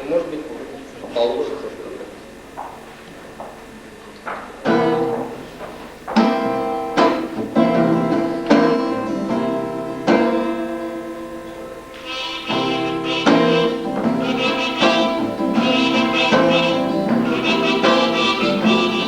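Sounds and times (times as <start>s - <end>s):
guitar strumming chords: 4.7s - 19.0s.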